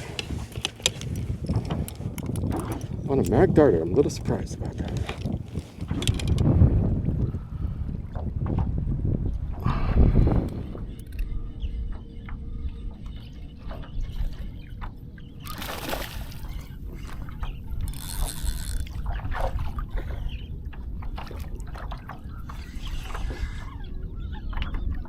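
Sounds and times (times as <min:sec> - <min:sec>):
small knocks and clicks: 0:00.0 - 0:03.4, 0:04.6 - 0:06.4
water sloshing against hull: 0:00.0 - 0:25.0.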